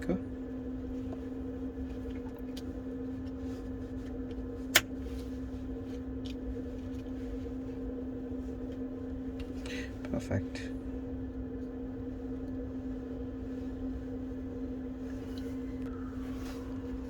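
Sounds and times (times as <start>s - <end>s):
electrical hum: 0.0s - 17.0s.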